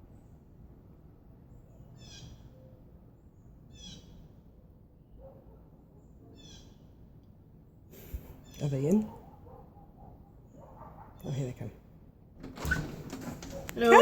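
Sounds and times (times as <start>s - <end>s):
small bird singing: 6.3s - 6.9s.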